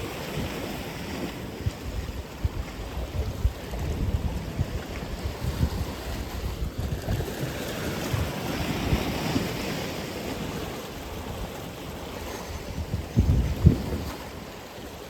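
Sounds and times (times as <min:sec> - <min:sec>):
wind gusts on microphone: 0:00.0 - 0:15.0
ocean wave breaking: 0:04.6 - 0:15.0.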